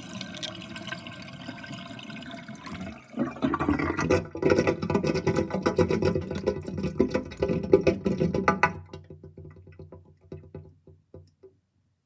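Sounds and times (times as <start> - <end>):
sink drain gurgling: 0.0 - 8.9.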